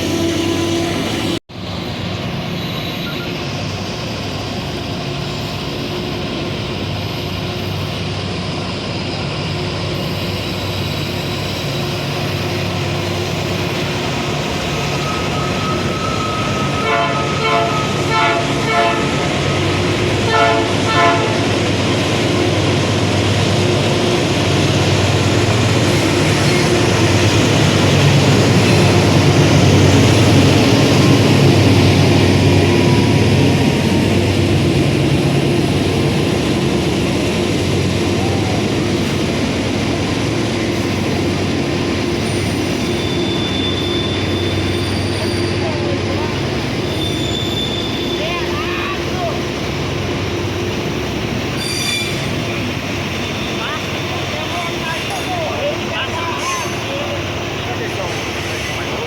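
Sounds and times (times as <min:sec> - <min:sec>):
train running past: 0:00.0 - 0:59.0
locomotive horn blasts: 0:15.4 - 0:21.7.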